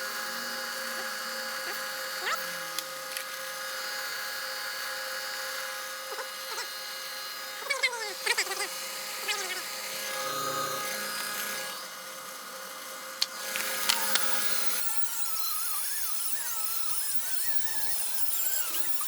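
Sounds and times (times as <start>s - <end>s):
high-pitched power tool: 0.0s - 19.0s
wavering squeal: 9.3s - 11.8s, 14.4s - 19.0s.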